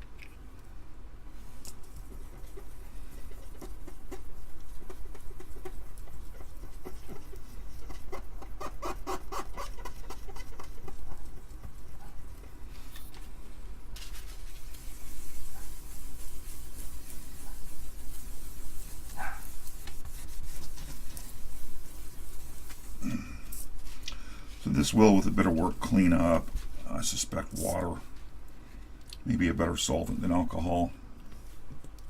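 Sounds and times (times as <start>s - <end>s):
scrubbing strokes on circuit board: 2.0s - 12.6s, 14.4s - 23.0s.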